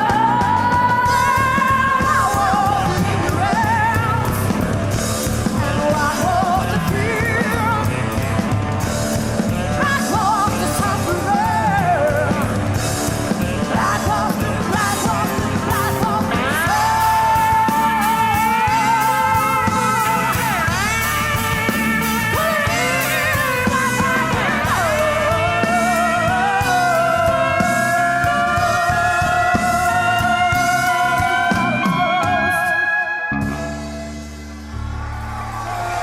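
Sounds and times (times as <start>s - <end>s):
rock band playing live: 0.0s - 36.0s.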